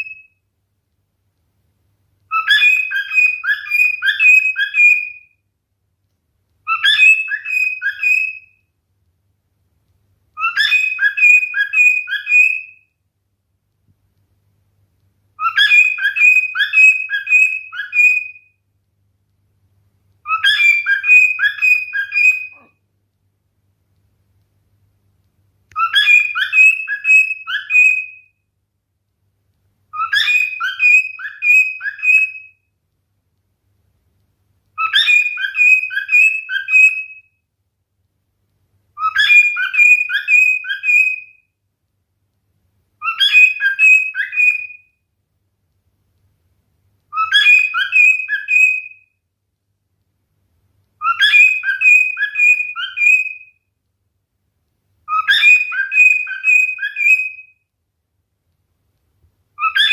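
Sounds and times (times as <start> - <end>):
cockatiel whistling: 0.0 - 0.3, 2.3 - 5.3, 6.6 - 8.6, 10.4 - 12.8, 15.4 - 18.5, 20.2 - 22.7, 25.7 - 28.3, 29.9 - 32.6, 34.8 - 37.3, 39.0 - 41.4, 43.0 - 45.0, 47.1 - 49.1, 51.0 - 53.6, 55.1 - 57.6, 59.6 - 59.9.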